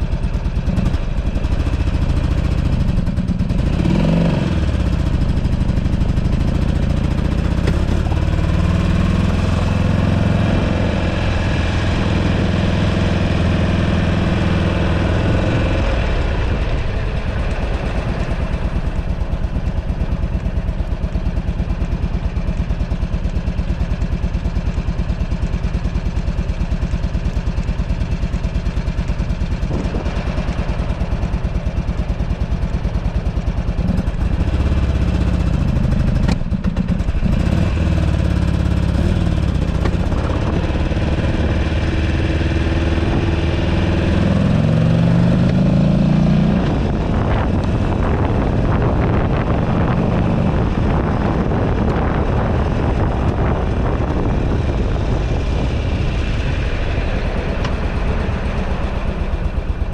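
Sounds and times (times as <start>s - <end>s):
motorcycle engine running: 0.0s - 59.9s
wind buffeting microphone: 29.4s - 33.1s, 46.5s - 59.9s.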